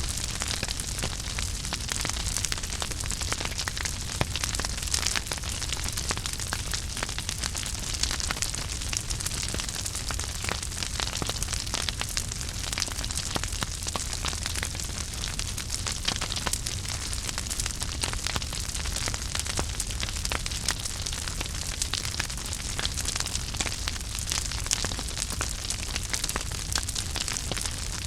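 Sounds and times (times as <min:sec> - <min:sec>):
flames hissing and rumbling: 0:00.0 - 0:28.0
wood fire crackling: 0:00.0 - 0:28.0.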